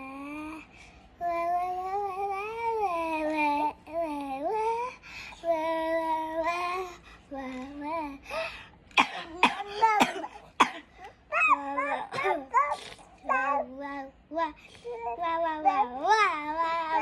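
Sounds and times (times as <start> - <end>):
child coughing: 9.0 - 13.6
child singing: 11.3 - 17.0.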